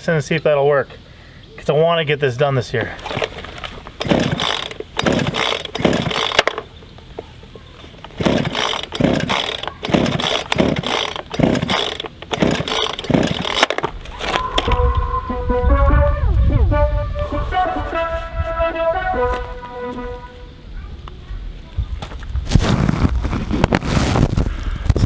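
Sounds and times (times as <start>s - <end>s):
recoil starter cord ripping: 2.8s - 6.7s, 7.8s - 14.8s, 22.4s - 25.0s
chainsaw engine turning over: 2.8s - 6.8s, 7.7s - 14.9s.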